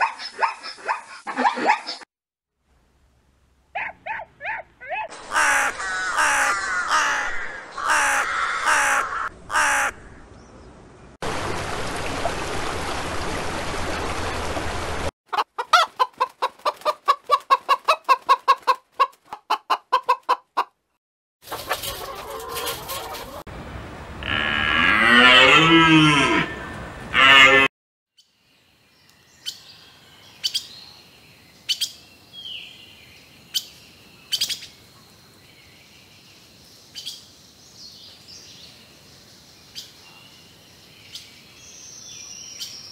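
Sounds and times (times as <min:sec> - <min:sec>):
animal pitched calls: 0:03.8 - 0:10.0
chicken clucking rapidly: 0:15.3 - 0:20.8, 0:21.4 - 0:23.5.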